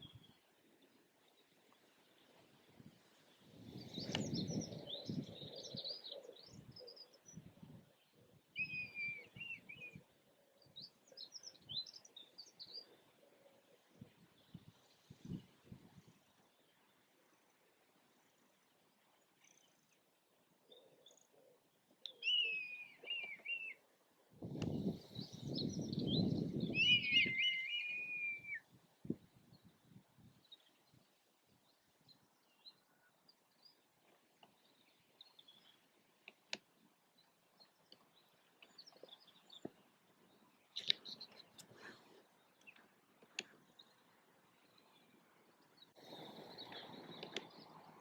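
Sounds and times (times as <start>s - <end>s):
bird whistled calls: 8.6s - 10.0s, 22.1s - 23.8s, 26.1s - 28.6s.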